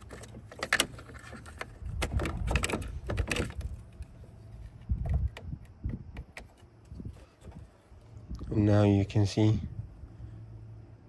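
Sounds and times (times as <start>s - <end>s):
clicks and knocks of handling: 0.0s - 4.1s.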